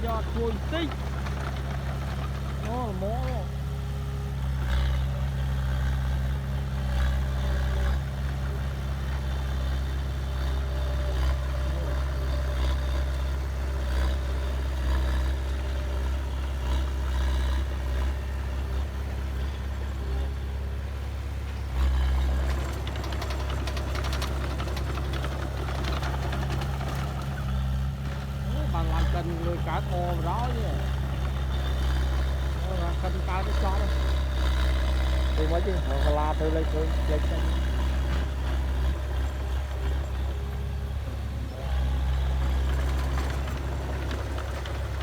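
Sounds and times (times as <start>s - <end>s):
rattling clatter: 0.0s - 3.2s, 22.0s - 31.4s
heavy diesel engine rumbling: 0.0s - 45.0s.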